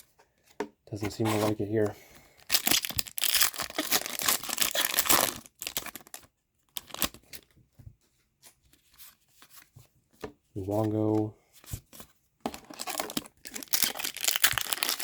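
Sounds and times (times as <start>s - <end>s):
foil wrapper tearing and crinkling: 2.4s - 6.2s, 6.8s - 7.4s, 12.5s - 15.0s
cards rustling and clicking: 10.6s - 15.0s.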